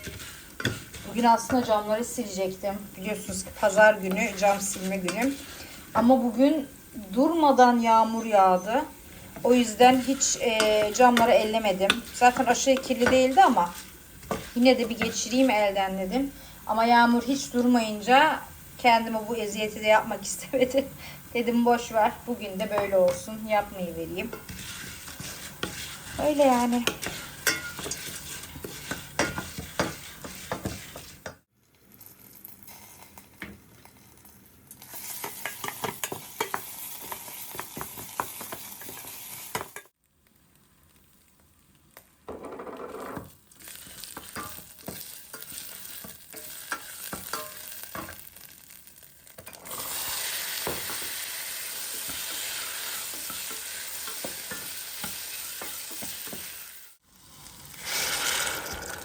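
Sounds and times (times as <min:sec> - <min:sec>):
utensil scraping a pan: 0:00.0 - 0:01.9, 0:03.2 - 0:06.1, 0:08.2 - 0:15.6, 0:24.2 - 0:31.5
food sizzling in a pan: 0:00.0 - 0:42.4, 0:43.1 - 0:59.0.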